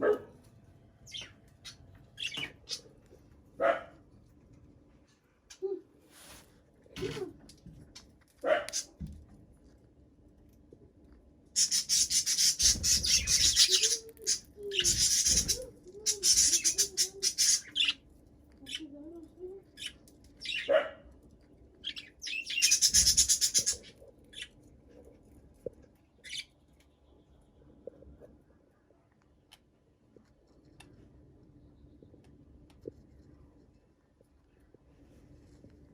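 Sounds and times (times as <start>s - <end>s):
budgerigars warbling: 11.6s - 18.0s, 21.9s - 23.9s.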